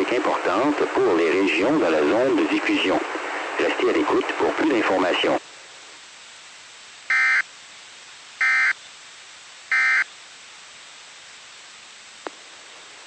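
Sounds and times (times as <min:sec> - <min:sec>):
radio hiss: 0:00.0 - 0:13.0
buzzy digital data bursts: 0:07.1 - 0:07.4, 0:08.4 - 0:08.8, 0:09.7 - 0:10.1.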